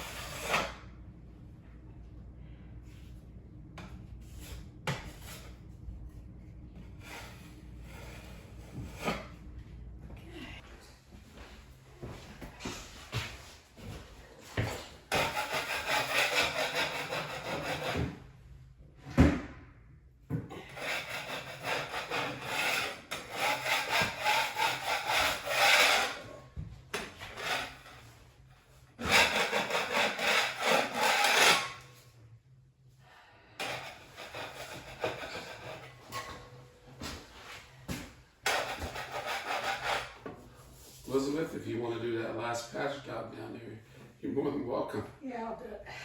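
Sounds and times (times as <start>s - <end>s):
hand saw cutting drywall: 0.0s - 0.8s, 14.6s - 18.2s, 20.5s - 26.3s, 26.9s - 28.1s, 29.0s - 31.8s, 33.6s - 36.3s, 38.4s - 40.3s.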